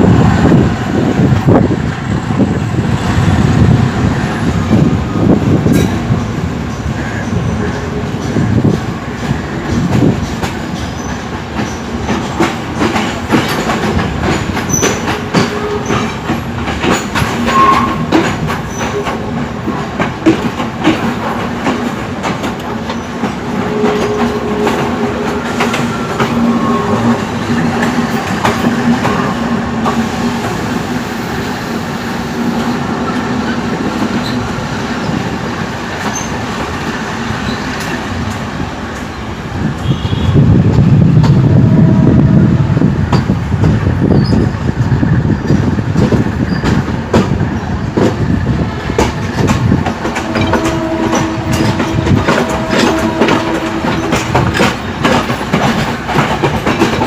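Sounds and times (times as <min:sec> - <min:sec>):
train wheels clanking over rail joints: 0:04.7 - 0:30.8, 0:43.0 - 0:57.0.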